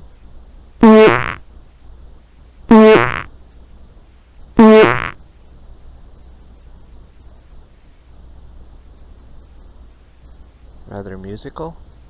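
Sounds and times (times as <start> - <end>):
buzzing fart: 0.8 - 1.4, 2.7 - 3.3, 4.6 - 5.2.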